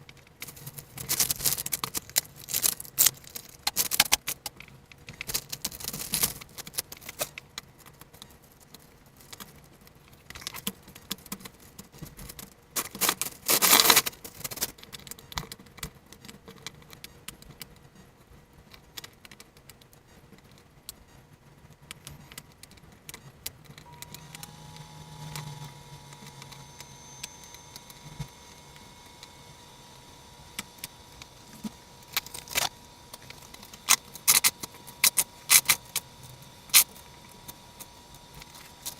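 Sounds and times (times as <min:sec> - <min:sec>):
small plastic parts clicking and rattling: 0:00.0 - 0:29.8, 0:30.4 - 0:38.9
faint steady whine: 0:00.0 - 0:38.9
packaging rustling: 0:00.4 - 0:04.4, 0:05.2 - 0:08.6, 0:26.2 - 0:38.9.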